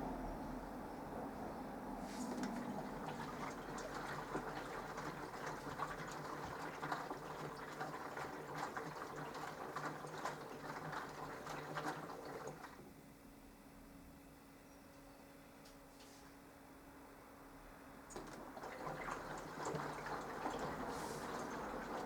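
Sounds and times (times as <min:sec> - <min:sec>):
washing machine motor hum: 0:01.1 - 0:12.9, 0:17.9 - 0:22.0
water sloshing and splashing: 0:02.2 - 0:12.8, 0:18.1 - 0:22.0.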